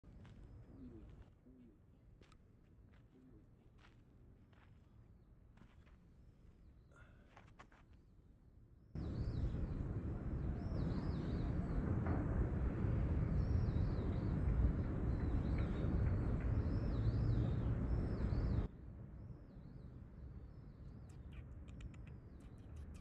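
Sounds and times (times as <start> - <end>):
low outdoor rumble: 0.0 - 6.4, 9.0 - 23.0
birds chirping: 20.6 - 23.0.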